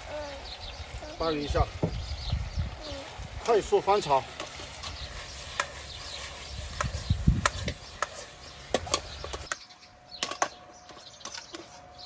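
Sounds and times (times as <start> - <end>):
metal spatula scraping a wok: 4.4 - 9.5.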